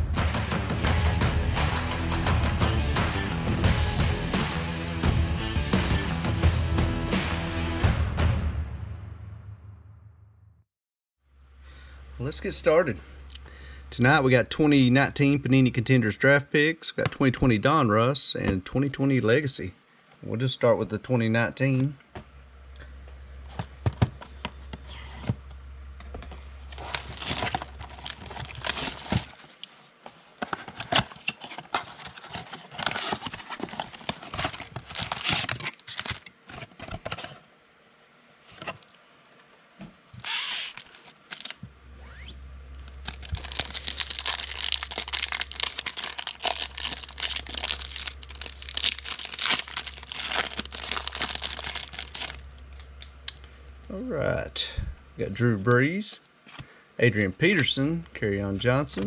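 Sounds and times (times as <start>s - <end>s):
wrappers tearing and crinkling: 26.6s - 29.8s, 30.7s - 36.8s, 40.2s - 53.0s.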